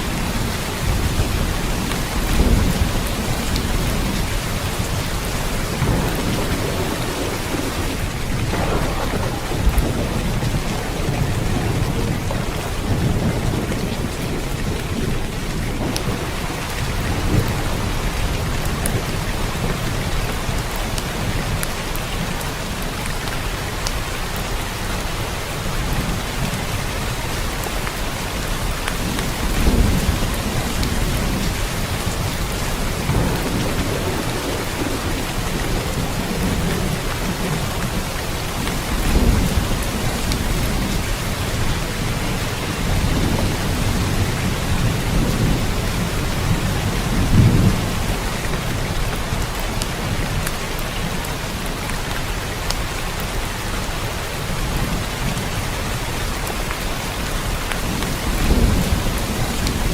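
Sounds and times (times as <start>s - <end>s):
distant thunder rumbling: 0.0s - 22.0s, 29.0s - 50.4s, 57.8s - 59.9s
steady rain: 0.0s - 59.9s.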